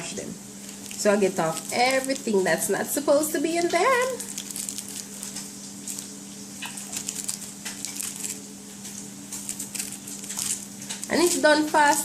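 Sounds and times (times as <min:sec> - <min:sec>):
steady low hum: 0:00.0 - 0:12.0
knife slicing lettuce: 0:03.6 - 0:12.0.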